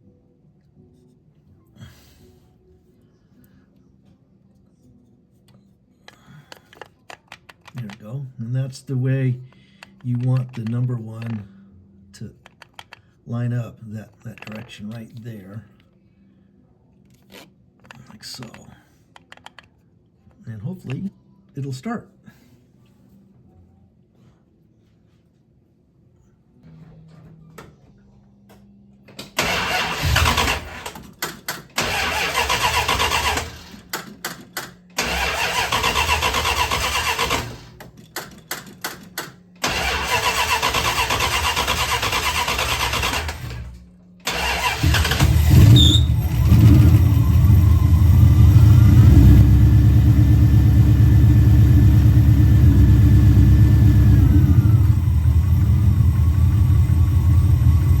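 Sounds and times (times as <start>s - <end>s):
engine cranking on starter: 29.3s - 58.0s
engine running steadily: 44.8s - 58.0s.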